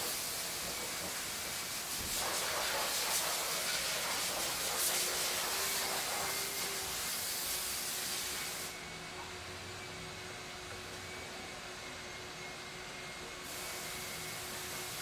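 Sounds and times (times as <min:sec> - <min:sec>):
hissing spray: 0:00.0 - 0:08.8.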